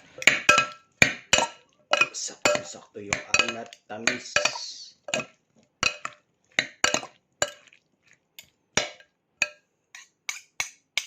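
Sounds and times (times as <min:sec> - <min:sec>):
utensil clinking against bowl: 0:00.0 - 0:07.8, 0:08.4 - 0:11.0.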